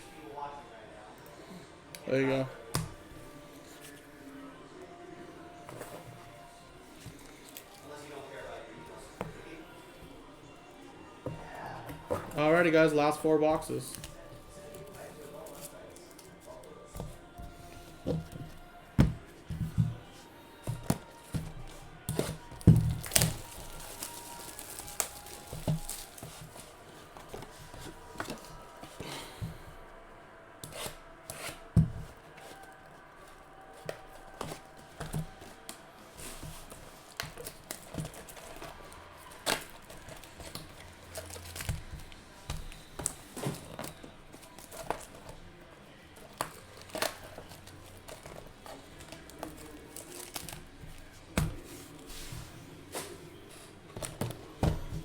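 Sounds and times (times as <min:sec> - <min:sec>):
foil packs tearing and crinkling: 0:20.8 - 0:28.8, 0:33.5 - 0:45.4, 0:46.2 - 0:51.2.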